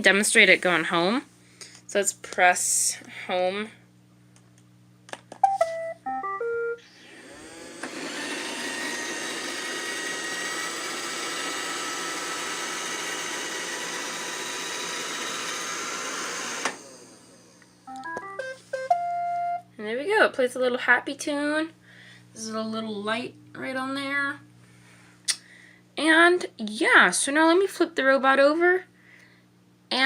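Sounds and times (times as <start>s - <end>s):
happy tune of stepped tones: 5.4s - 6.8s, 17.9s - 19.7s
robot vacuum beeping tune: 5.4s - 8.0s, 17.9s - 19.6s
vacuum motor and brushes running: 6.8s - 18.8s.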